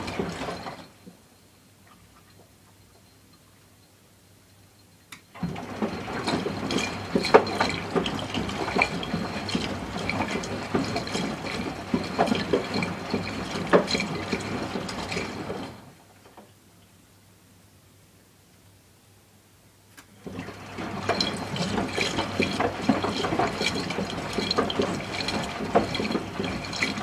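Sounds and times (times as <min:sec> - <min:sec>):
washing machine drum turning: 0:00.0 - 0:00.9, 0:05.4 - 0:15.8, 0:20.2 - 0:27.0.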